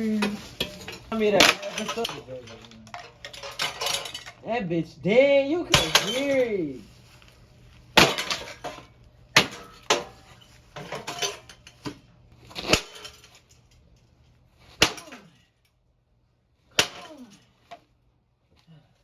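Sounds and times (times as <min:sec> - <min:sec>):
loose parts rattling: 0:00.0 - 0:04.4.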